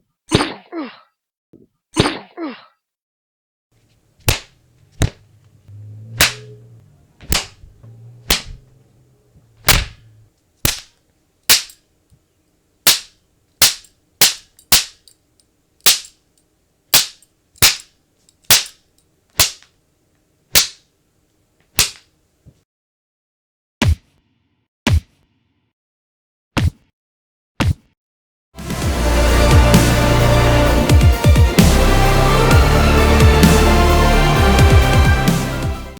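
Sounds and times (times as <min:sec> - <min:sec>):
punch and slap impacts: 0:02.0 - 0:02.4, 0:04.2 - 0:05.2, 0:06.2 - 0:06.4, 0:07.2 - 0:07.6, 0:08.2 - 0:08.6, 0:09.6 - 0:10.9, 0:11.5 - 0:11.8, 0:19.4 - 0:19.6, 0:20.6 - 0:20.8, 0:21.8 - 0:22.0, 0:23.8 - 0:24.2, 0:24.9 - 0:25.2, 0:26.6 - 0:26.9, 0:27.6 - 0:28.0
low hum: 0:04.6 - 0:10.3.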